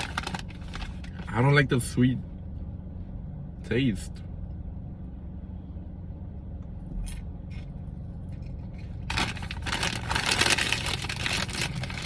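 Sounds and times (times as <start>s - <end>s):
plastic snack bag crinkling: 0.0s - 1.1s, 9.0s - 12.0s
steady low hum: 0.0s - 12.0s.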